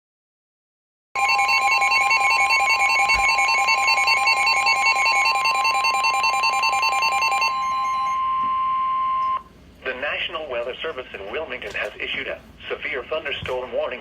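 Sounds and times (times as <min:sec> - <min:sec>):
loud steady alarm tone: 0:01.2 - 0:09.4.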